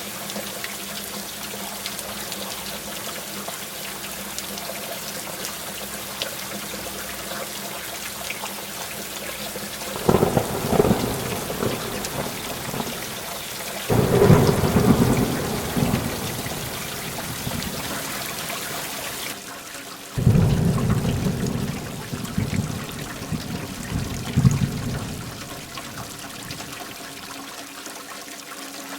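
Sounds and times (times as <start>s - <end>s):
heavy rain falling: 9.1s - 27.4s
thunder rolling: 9.9s - 19.4s, 20.2s - 27.1s.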